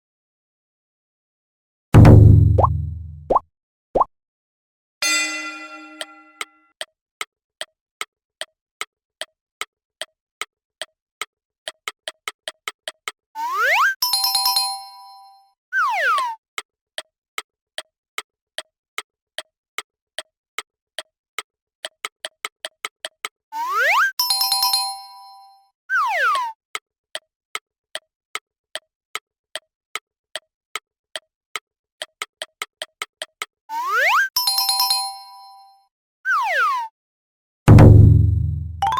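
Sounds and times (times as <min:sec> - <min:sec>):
bell-like chime: 0:05.0 - 0:06.7, 0:34.4 - 0:35.8
ticking beat: 0:37.7 - 0:38.9
slide tone: 0:38.4 - 0:38.9.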